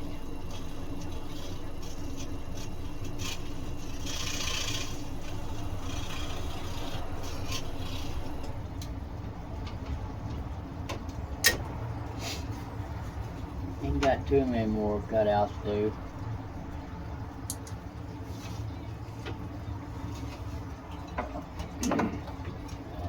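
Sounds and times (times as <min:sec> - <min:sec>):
scroll saw cutting wood: 0:00.0 - 0:08.6.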